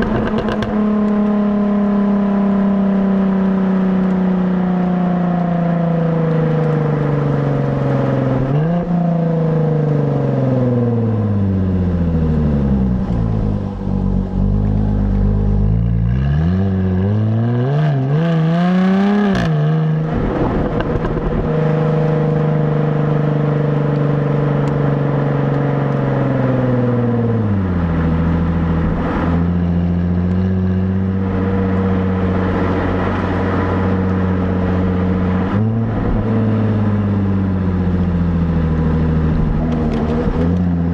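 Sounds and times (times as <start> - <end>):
gear shift: 0.0 - 1.3, 12.1 - 16.6, 38.9 - 40.7
car exhaust note: 10.8 - 21.4.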